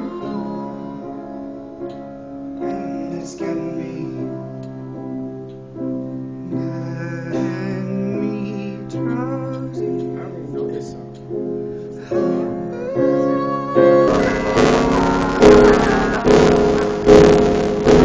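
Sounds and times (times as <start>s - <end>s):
person singing: 0.0s - 1.9s, 2.6s - 4.7s, 6.5s - 10.8s, 12.0s - 18.0s
piano playing chords: 0.0s - 18.0s.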